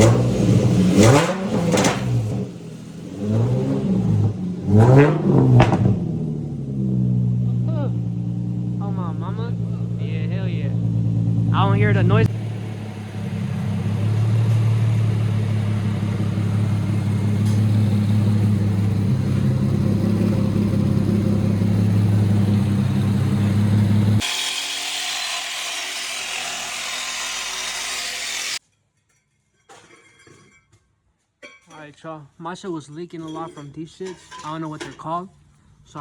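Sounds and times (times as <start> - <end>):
car engine idling: 0.0 - 24.2.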